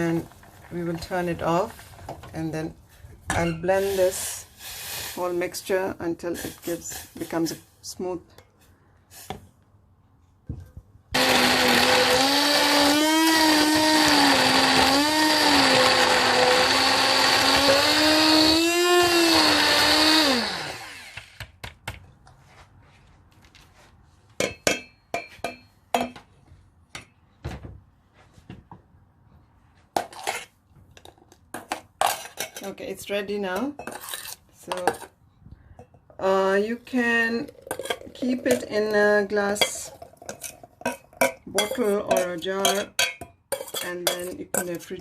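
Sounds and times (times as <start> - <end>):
electric blender running: 11.2 - 21.4.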